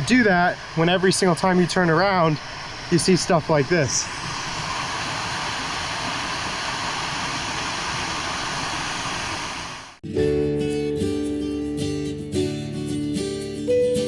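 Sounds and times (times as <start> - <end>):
strummed acoustic guitar music: 10.0 - 14.0.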